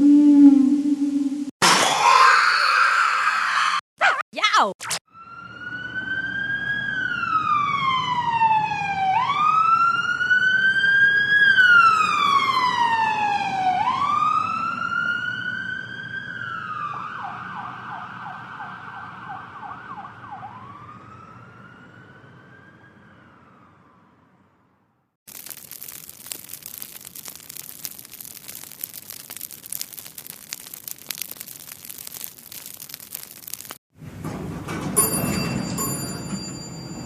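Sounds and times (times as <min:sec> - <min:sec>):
emergency siren wailing: 0:05.1 - 0:24.3.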